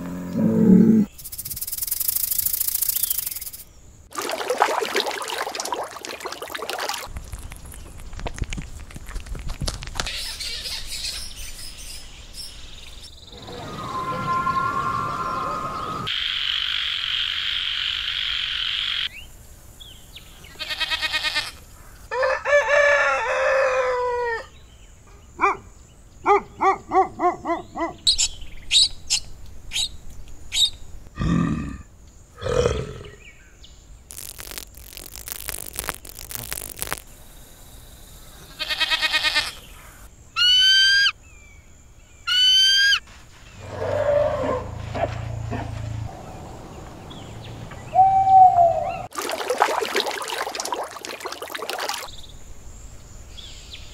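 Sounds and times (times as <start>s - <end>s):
low animal calls: 0.0s - 1.1s, 13.3s - 16.1s
sweeping whistles: 13.2s - 16.1s, 47.8s - 49.1s
animal trills: 34.1s - 37.0s
hissing noise: 34.1s - 37.5s.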